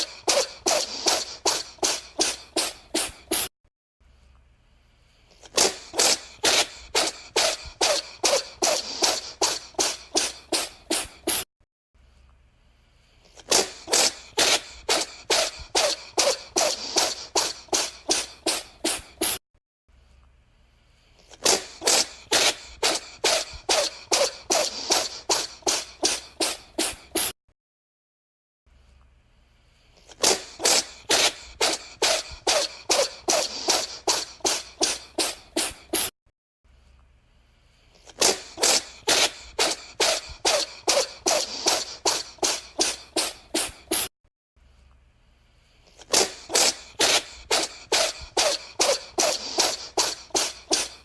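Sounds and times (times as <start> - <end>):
cat sneezing: 0.0 - 3.5, 5.3 - 11.5, 13.3 - 19.4, 21.2 - 27.4, 30.0 - 36.1, 38.0 - 44.1, 45.9 - 51.0.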